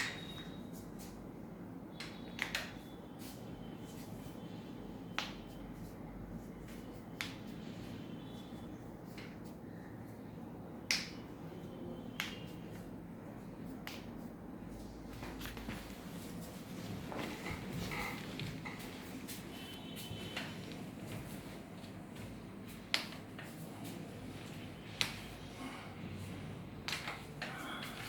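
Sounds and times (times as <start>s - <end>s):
low background hum: 0.0s - 28.0s.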